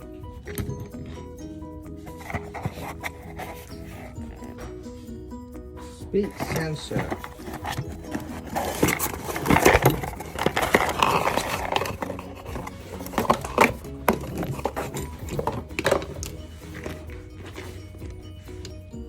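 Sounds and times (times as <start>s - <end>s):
rough rustling: 5.8s - 18.9s.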